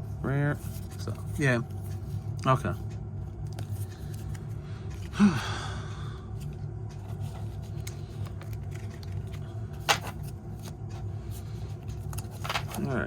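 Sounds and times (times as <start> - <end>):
steady low hum: 0.0 - 13.0
man sighing: 5.1 - 6.1.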